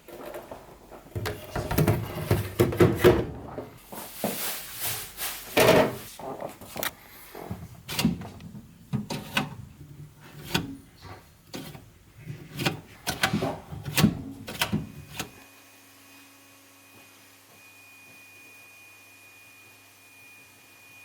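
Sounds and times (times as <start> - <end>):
refrigerator drawers clattering: 0.0 - 4.4, 5.0 - 15.4.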